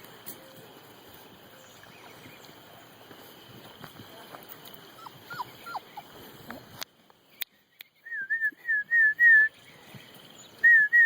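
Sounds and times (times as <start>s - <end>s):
puppy whimpering: 5.0s - 6.1s.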